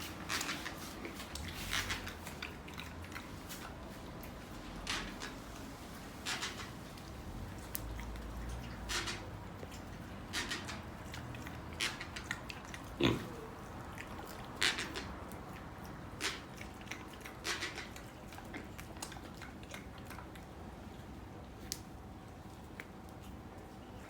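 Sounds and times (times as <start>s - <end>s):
pig sniffing: 0.0s - 20.5s
pig grunting: 12.6s - 15.0s.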